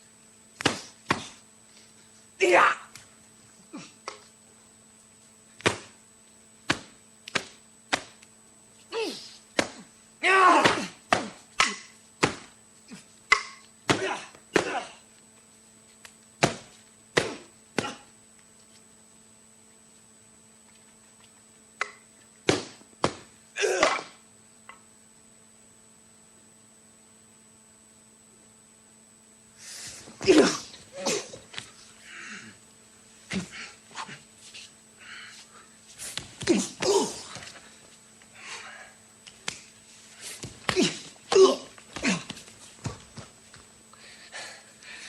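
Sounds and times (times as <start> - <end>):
faint tape hum and whine: 0.0 - 45.0
sharp blows and slaps: 0.6 - 1.4, 5.6 - 6.0, 6.6 - 8.3, 9.2 - 12.6, 13.3 - 15.0, 16.0 - 18.1, 21.8 - 24.2, 36.0 - 37.5, 39.2 - 39.7, 40.3 - 43.2
people grunting and shouting: 3.6 - 4.3, 8.9 - 12.0, 13.9 - 15.0, 17.2 - 18.1, 23.6 - 24.2, 29.9 - 32.6, 36.1 - 37.6, 40.3 - 42.5.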